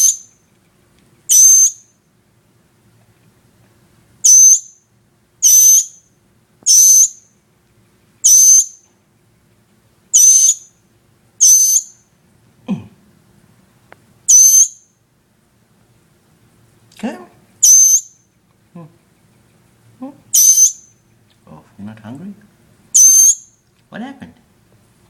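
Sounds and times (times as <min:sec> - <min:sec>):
baby bird chick screeching: 0:00.0 - 0:00.3, 0:01.3 - 0:01.8, 0:04.2 - 0:04.7, 0:05.4 - 0:06.0, 0:06.7 - 0:07.2, 0:08.2 - 0:08.8, 0:10.1 - 0:10.7, 0:11.4 - 0:12.0, 0:14.3 - 0:14.8, 0:17.6 - 0:18.2, 0:20.3 - 0:20.9, 0:22.9 - 0:23.5.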